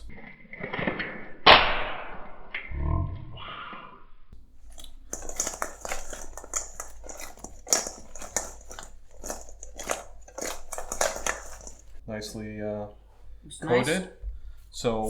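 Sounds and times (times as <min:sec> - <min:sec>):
chicken wings tossed in sticky sauce: 0:04.4 - 0:12.5.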